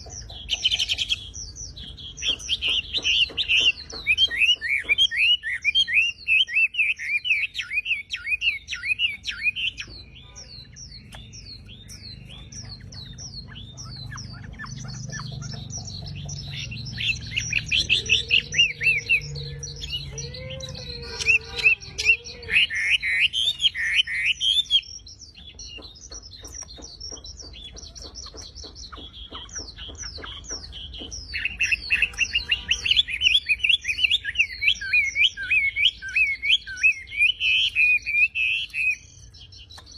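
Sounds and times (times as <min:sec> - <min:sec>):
songbird whistling sharp repeated notes: 0:00.0 - 0:10.2, 0:22.6 - 0:39.9.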